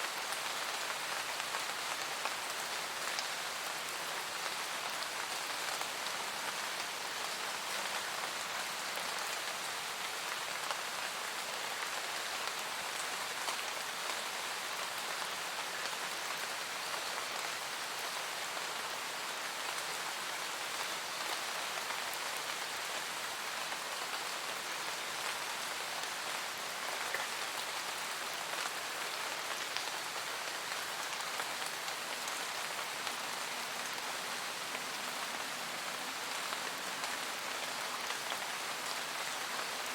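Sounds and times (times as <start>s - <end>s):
steady rain in forest: 0.0s - 39.9s.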